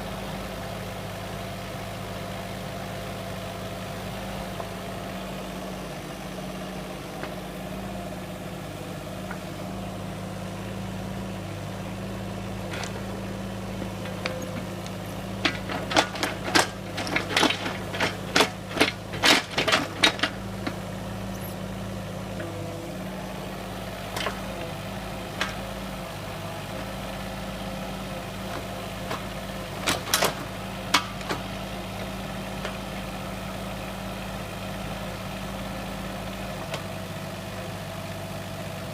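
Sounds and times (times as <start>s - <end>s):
diesel engine idling: 0.0s - 38.9s
sharp metal clanks and knocks: 13.9s - 21.6s.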